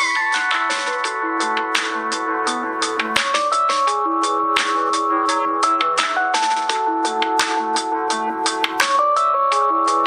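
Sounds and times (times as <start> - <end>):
phone ringtone with percussion beat: 0.0 - 10.0.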